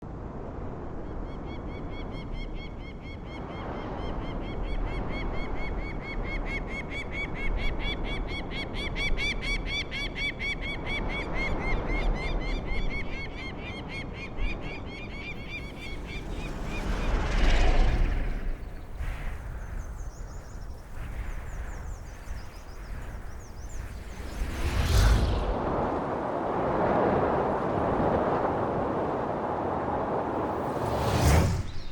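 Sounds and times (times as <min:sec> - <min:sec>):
low wind-like rumble: 0:00.0 - 0:31.9
whoosh: 0:15.3 - 0:20.2, 0:23.2 - 0:26.2, 0:30.3 - 0:31.9.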